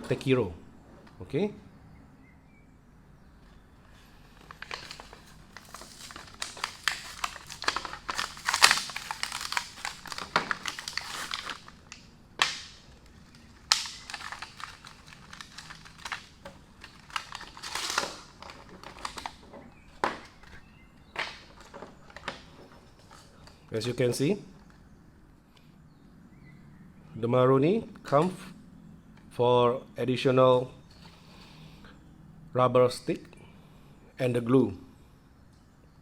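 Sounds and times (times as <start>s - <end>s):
packaging crinkling and rustling: 3.8s - 23.7s.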